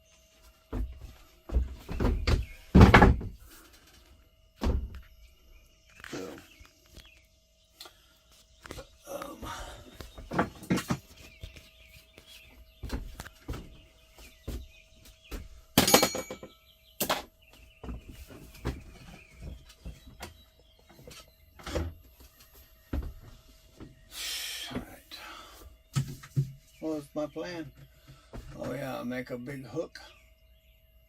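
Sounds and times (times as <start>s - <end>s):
knocks and clunks: 0.7s - 3.4s, 4.6s - 5.1s.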